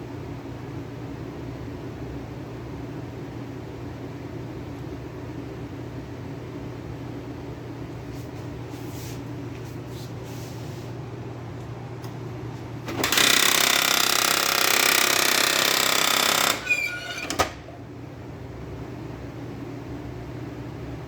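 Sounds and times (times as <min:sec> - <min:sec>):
printer grinding rattle: 0:12.9 - 0:17.8.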